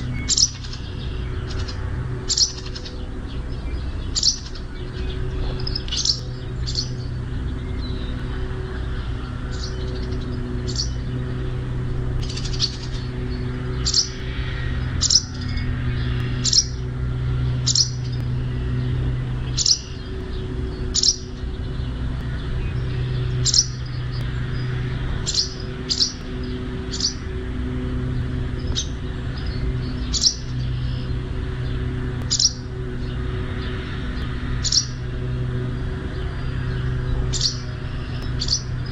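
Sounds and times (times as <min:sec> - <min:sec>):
songbird chirps: 0:00.0 - 0:38.9
steady low hum: 0:00.0 - 0:38.9.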